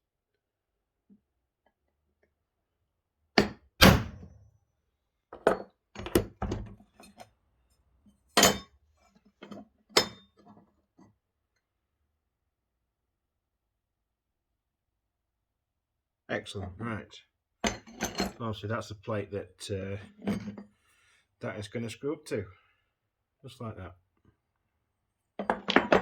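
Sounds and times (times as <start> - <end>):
hammer striking metal punch: 3.4 - 4.2.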